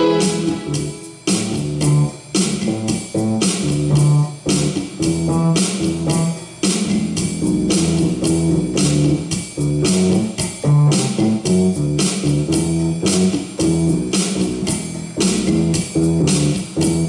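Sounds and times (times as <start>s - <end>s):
hissing cymbal hits: 0.0s - 2.6s
bass guitar: 0.0s - 17.0s.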